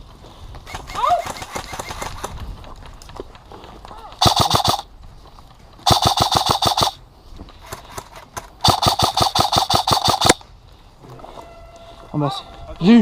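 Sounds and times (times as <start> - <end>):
airsoft gun firing bursts: 0.7 - 2.3, 4.2 - 4.9, 5.8 - 7.0, 8.6 - 10.4.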